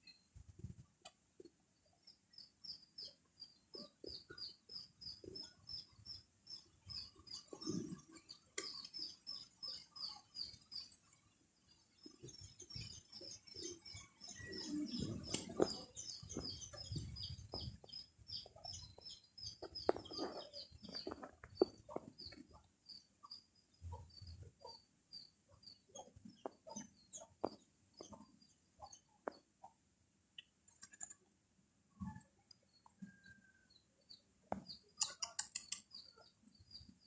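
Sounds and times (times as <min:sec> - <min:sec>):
birds chirping: 0:02.0 - 0:31.2, 0:31.9 - 0:37.0
scattered clicks and knocks: 0:15.2 - 0:22.6.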